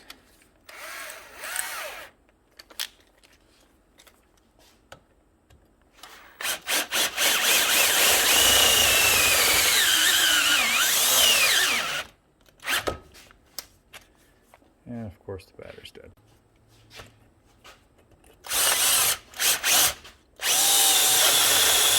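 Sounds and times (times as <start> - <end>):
cordless drill boring into metal: 0.7 - 2.1, 6.2 - 12.9, 18.4 - 21.9.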